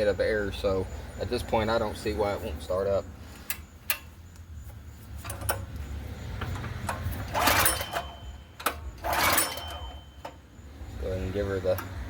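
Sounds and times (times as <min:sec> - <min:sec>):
engine pull-starter whirring: 0:05.2 - 0:10.5.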